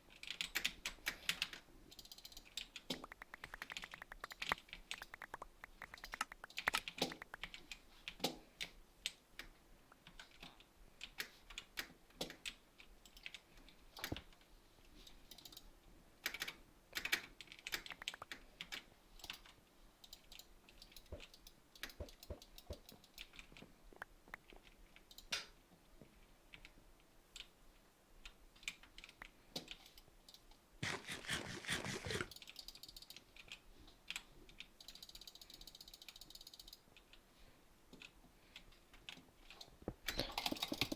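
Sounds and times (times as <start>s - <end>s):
irregular clicking: 0.1s - 14.4s, 15.0s - 25.5s.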